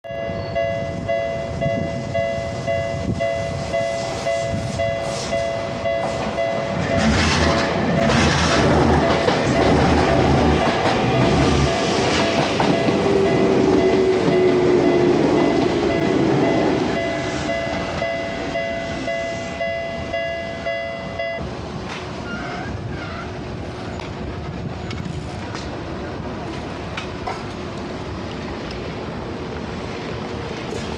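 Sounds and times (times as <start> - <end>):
level crossing warning bell: 0.0 - 21.5
street noise: 0.0 - 30.9
train wheels clattering on rails: 2.5 - 20.1, 23.7 - 28.9.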